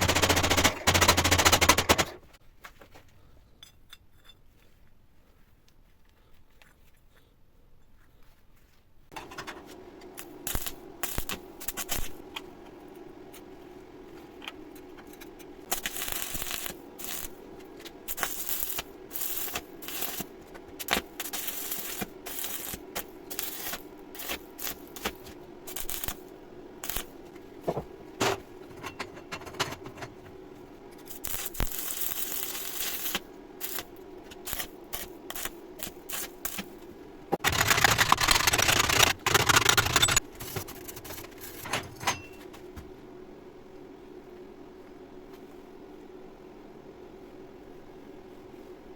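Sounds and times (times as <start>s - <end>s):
welding machine hum: 0.0s - 2.2s, 9.1s - 13.3s, 14.1s - 28.0s, 28.6s - 41.6s
welding arc crackling: 10.1s - 12.4s, 15.6s - 27.3s, 30.9s - 36.8s, 37.4s - 40.4s.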